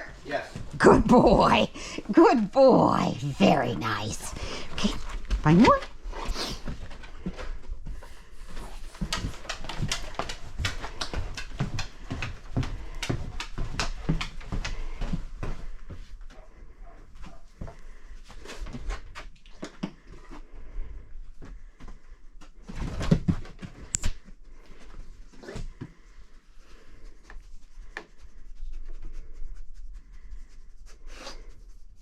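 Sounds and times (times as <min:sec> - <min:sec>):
dog sniffing hard: 0:06.1 - 0:06.9, 0:26.4 - 0:32.0.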